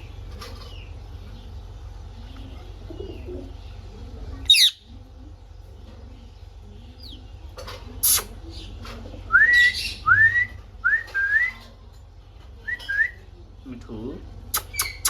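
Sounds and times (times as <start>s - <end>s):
parrot shrieking: 4.5s - 4.8s.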